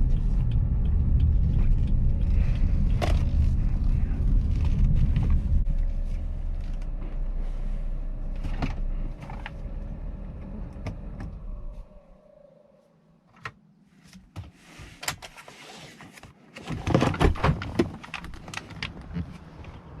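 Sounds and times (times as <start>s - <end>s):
engine rumbling: 0.0s - 13.8s.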